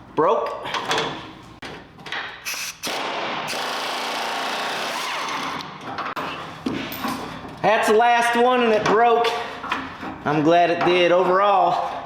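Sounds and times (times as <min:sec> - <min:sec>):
pneumatic impact wrench hammering: 0:02.1 - 0:05.9.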